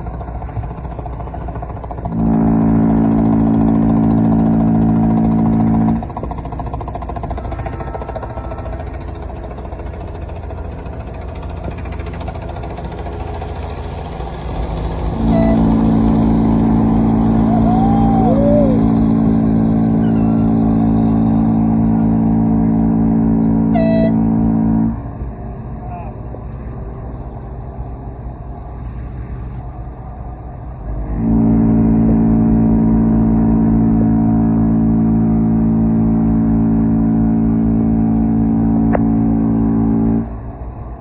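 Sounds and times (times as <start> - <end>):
ship's horn blast: 2.1 - 6.1, 15.0 - 25.1, 30.9 - 40.4
low rumble: 9.6 - 41.0.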